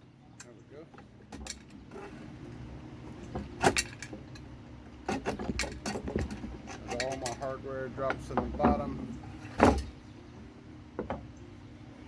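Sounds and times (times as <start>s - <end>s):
metal bolts and nuts clinking: 0.4s - 2.6s, 3.3s - 10.0s
rattling clinks: 5.4s - 9.9s.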